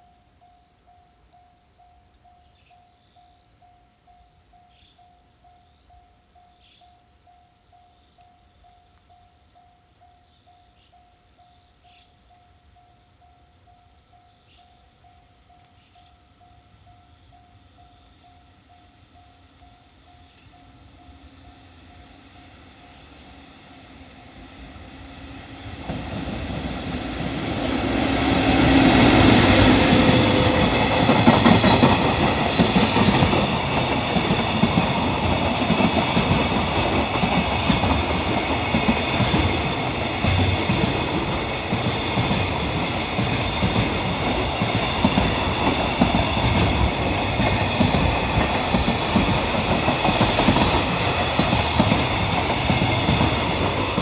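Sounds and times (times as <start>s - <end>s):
electric locomotive: 0.0s - 54.0s
train wheels rumbling on rails: 19.7s - 54.0s.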